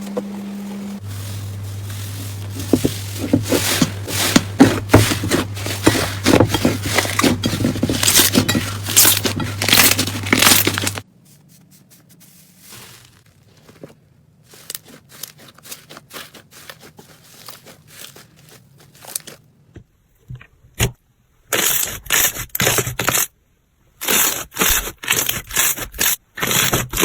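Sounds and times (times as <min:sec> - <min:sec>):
steady low hum: 0:00.0 - 0:13.2.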